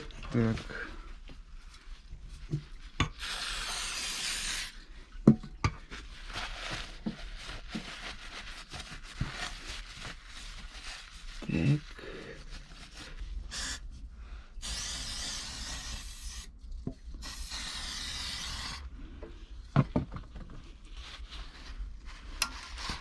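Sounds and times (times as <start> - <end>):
aerosol spray hissing: 3.2 - 4.7, 14.6 - 16.5, 17.2 - 18.8.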